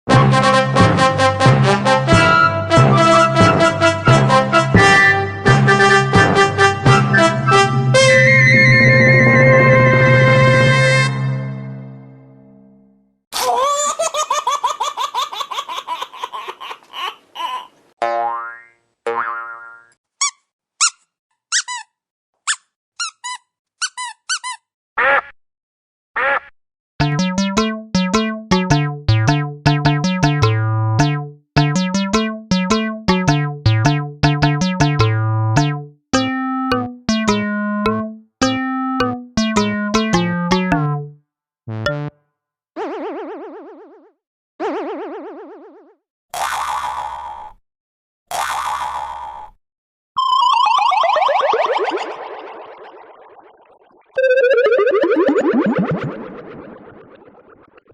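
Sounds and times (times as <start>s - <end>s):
bouncy electronic keyboard tune: 0.1s - 10.8s, 27.0s - 42.2s, 54.2s - 57.2s
short high squeaks: 20.2s - 24.7s
synthesizer chord: 27.0s - 42.2s
swooping tones: 54.2s - 57.7s.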